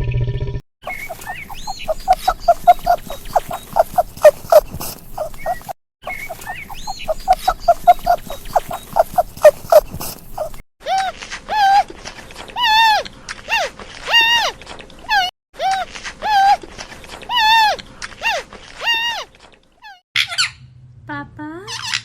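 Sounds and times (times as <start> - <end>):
rapid short animal calls: 0.9 - 10.6.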